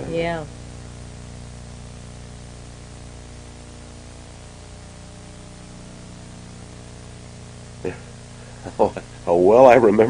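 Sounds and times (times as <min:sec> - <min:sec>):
low electrical hum: 0:00.0 - 0:10.0
steady hiss: 0:00.0 - 0:10.0.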